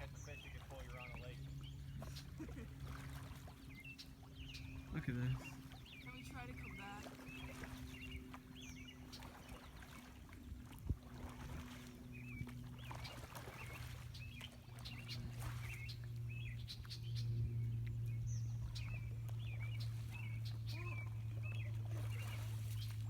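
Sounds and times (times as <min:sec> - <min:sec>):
birds chirping: 0:00.0 - 0:23.0
low steady hum: 0:00.0 - 0:23.0.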